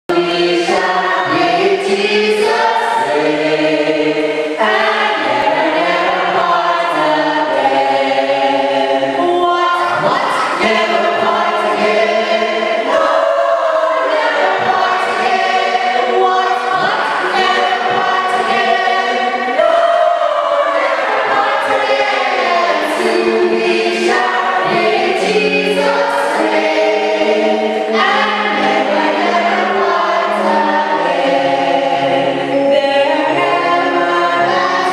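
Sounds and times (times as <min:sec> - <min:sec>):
choir singing in harmony: 0:00.1 - 0:34.9.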